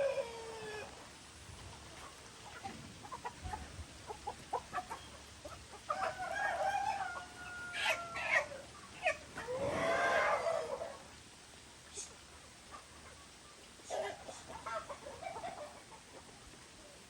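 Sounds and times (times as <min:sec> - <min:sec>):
chickens clucking: 0:00.0 - 0:17.0
rooster crowing: 0:06.0 - 0:08.6.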